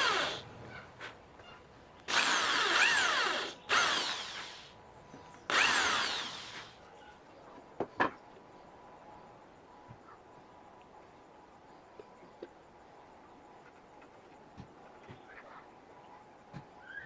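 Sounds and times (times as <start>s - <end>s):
power drill running: 0.0s - 0.4s, 2.1s - 4.7s, 5.5s - 6.8s.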